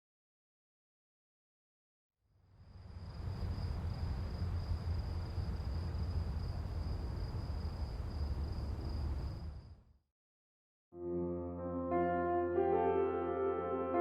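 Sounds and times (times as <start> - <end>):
crickets chirring: 2.4 - 9.8.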